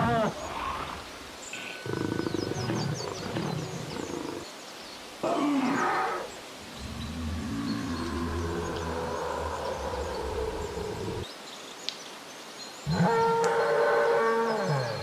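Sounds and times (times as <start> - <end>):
dinosaur growling roar: 1.8 - 4.4, 5.2 - 11.2.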